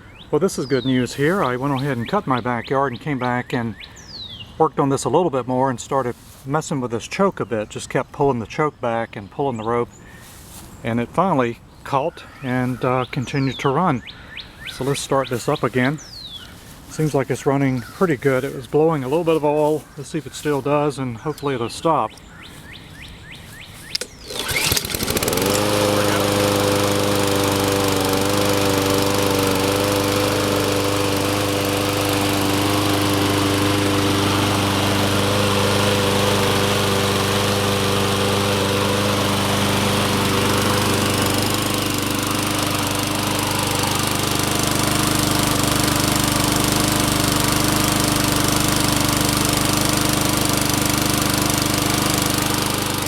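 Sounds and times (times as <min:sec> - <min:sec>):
lawn mower engine pull-started: 0:00.6 - 0:02.7, 0:14.6 - 0:53.0
lawn mower engine running: 0:01.0 - 0:02.7, 0:14.7 - 0:53.0.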